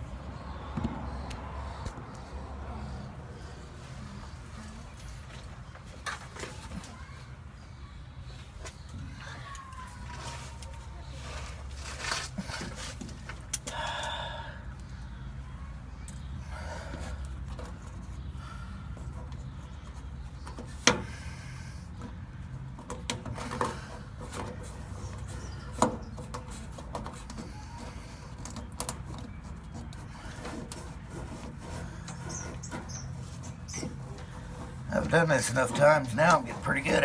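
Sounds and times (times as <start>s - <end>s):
tools knocking and scraping: 22.6s - 37.0s.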